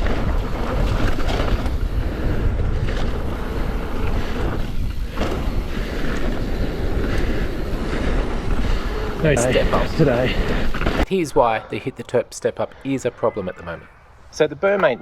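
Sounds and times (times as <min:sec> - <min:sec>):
bike rattling over rough ground: 0:00.0 - 0:11.1
bike tyre rumble: 0:00.0 - 0:11.1
wind rush over microphone: 0:00.0 - 0:11.1.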